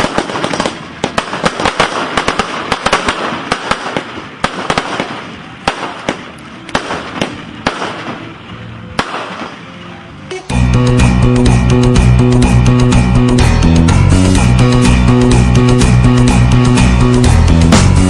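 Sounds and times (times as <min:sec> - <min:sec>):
fireworks cracking and popping: 0:00.0 - 0:08.4, 0:09.0 - 0:09.7
music: 0:06.0 - 0:18.0.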